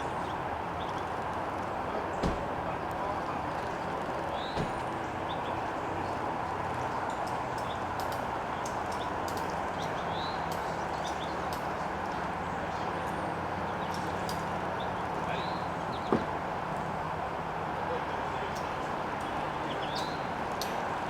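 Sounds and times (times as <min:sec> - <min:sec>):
small birds chirping: 0:00.1 - 0:11.8, 0:12.4 - 0:16.2, 0:18.2 - 0:20.6.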